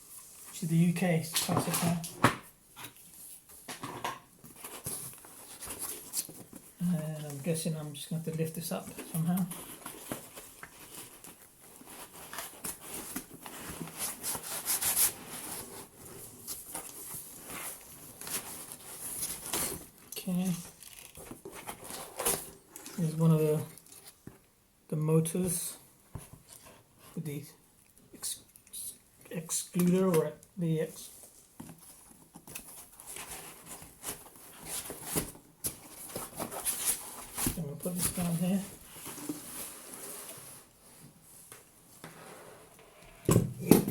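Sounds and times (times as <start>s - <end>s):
packaging rubbing and scraping: 8.8s - 19.9s.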